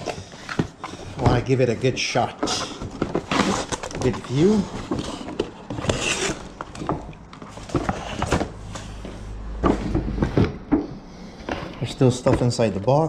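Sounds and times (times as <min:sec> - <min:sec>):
packaging rustle: 0:00.0 - 0:09.0
cardboard box being handled: 0:02.4 - 0:08.6.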